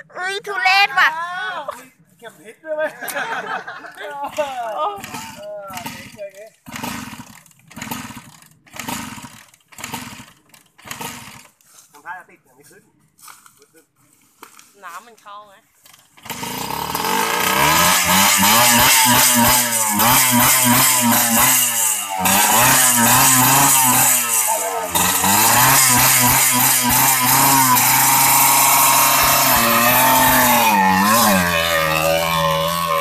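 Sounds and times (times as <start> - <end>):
small motorcycle engine revving: 4.2 - 11.6, 15.9 - 33.0.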